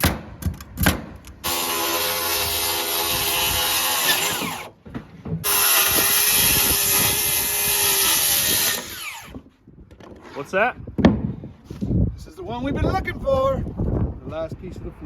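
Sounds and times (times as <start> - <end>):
motor winding down whine: 1.4 - 4.7, 5.5 - 9.3
handheld power tool running: 1.4 - 4.8, 5.4 - 9.4.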